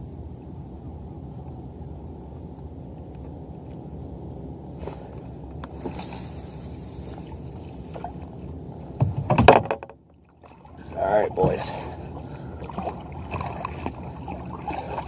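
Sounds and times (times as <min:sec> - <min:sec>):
short hiss: 0:06.0 - 0:08.0.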